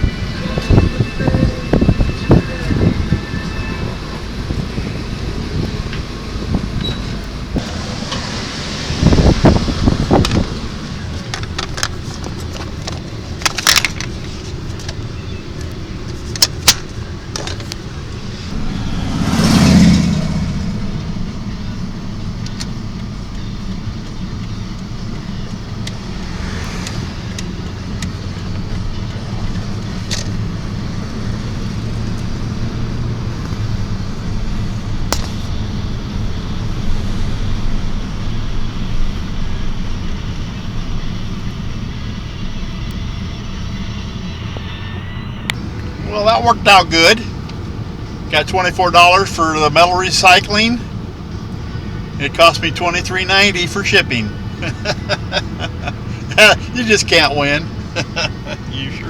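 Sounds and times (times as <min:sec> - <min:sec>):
passing vehicle whoosh: 0:00.0 - 0:12.6, 0:17.0 - 0:48.4
vehicle engine and road rumble: 0:00.0 - 0:59.0.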